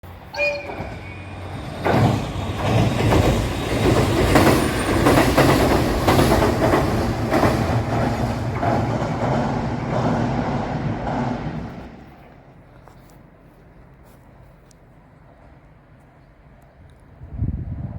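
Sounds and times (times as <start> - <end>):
train wheels clattering over rail joints: 0.7 - 11.9.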